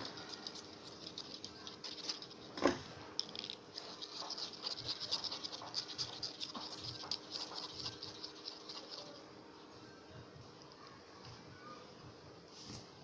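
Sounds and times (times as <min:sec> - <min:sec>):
light scratching and ticking: 0:00.0 - 0:09.6
low steady hum: 0:00.0 - 0:13.0.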